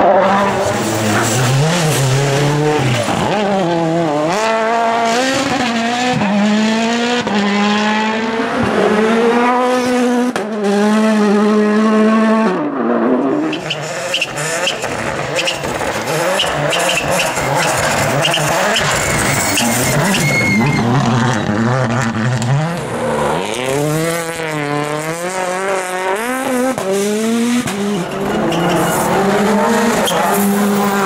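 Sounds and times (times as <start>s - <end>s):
rally car engine at full throttle: 0.0s - 31.0s.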